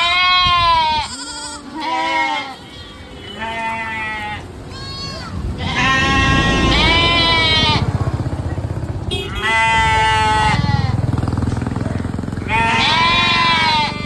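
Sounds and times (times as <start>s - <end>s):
sheep bleating: 0.0s - 7.9s, 9.2s - 11.0s, 12.4s - 14.0s
low rumble: 5.4s - 11.0s.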